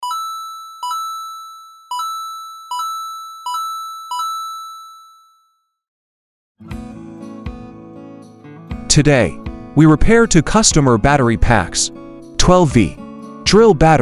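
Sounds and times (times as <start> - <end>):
chime ringing: 0.0 - 5.5.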